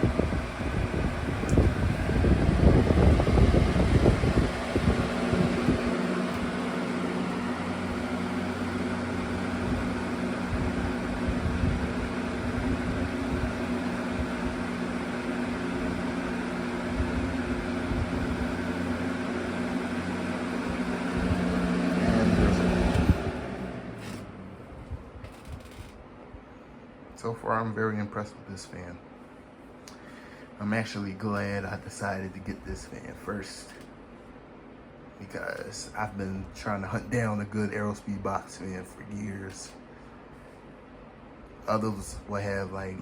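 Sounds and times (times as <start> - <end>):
air buffeting microphone: 0.0 - 23.5
box fan running: 0.0 - 43.0.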